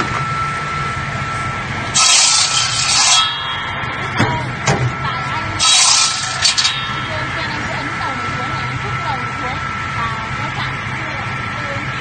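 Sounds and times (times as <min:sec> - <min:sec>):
motor humming: 0:00.0 - 0:12.0.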